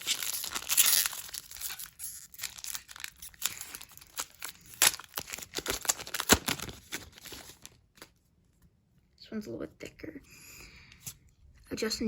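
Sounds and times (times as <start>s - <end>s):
wrapper crinkling: 0.0s - 8.1s
wrapper tearing snap: 0.0s - 8.1s.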